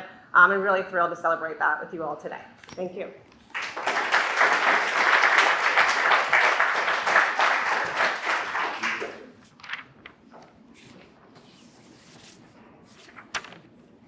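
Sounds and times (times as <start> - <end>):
audience applauding: 3.5 - 9.4.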